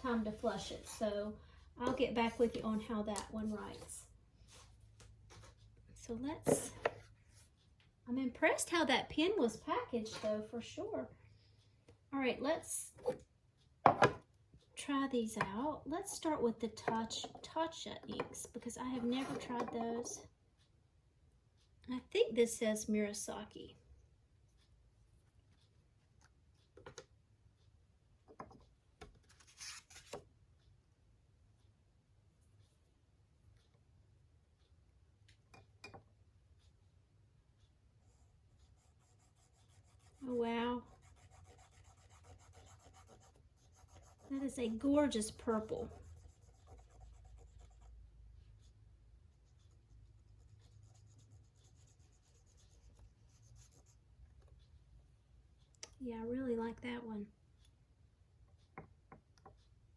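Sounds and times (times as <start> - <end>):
low steady hum: 0.0 - 58.7
pen scratching on paper: 29.3 - 30.1, 38.7 - 47.9, 50.0 - 54.0.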